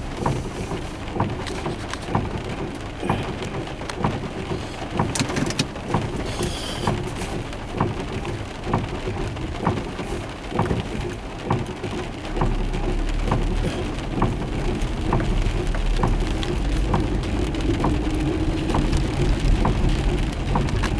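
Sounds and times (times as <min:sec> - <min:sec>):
rain falling: 0:00.0 - 0:20.9
raindrops ticking close by: 0:00.0 - 0:20.9
low thunder rumble: 0:12.3 - 0:20.9.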